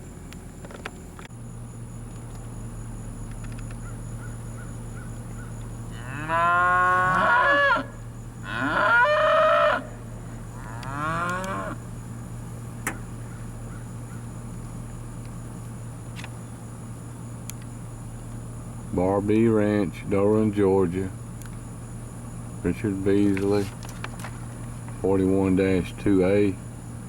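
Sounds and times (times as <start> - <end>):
steady low hum: 0.0 - 27.0
cattle mooing: 5.9 - 11.8.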